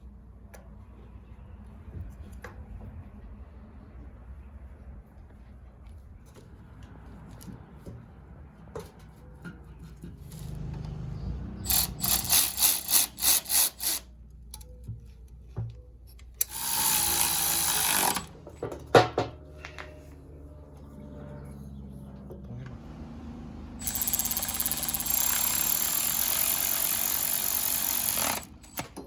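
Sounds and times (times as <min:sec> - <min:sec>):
power tool bursts: 0:11.6 - 0:14.0, 0:16.4 - 0:18.3, 0:23.8 - 0:28.9
parts clicking and knocking: 0:11.6 - 0:20.1, 0:23.8 - 0:29.0.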